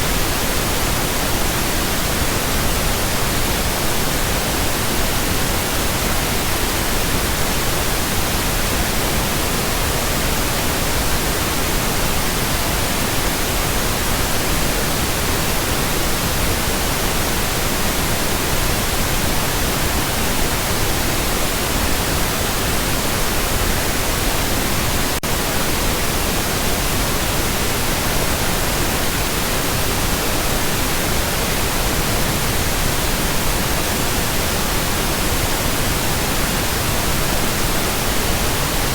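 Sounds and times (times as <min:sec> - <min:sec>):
pink noise hiss: 0:00.0 - 0:38.9.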